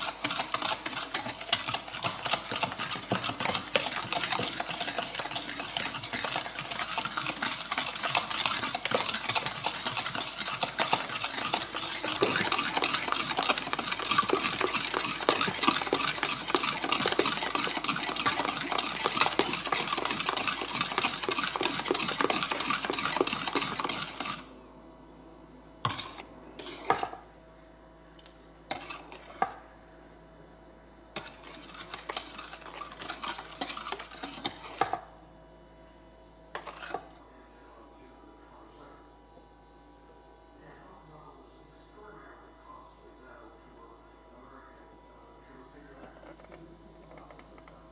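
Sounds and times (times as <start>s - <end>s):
utensil stirring in mixing bowl: 0.0s - 24.6s, 25.8s - 27.3s, 28.7s - 29.7s, 31.1s - 35.2s, 36.5s - 37.3s.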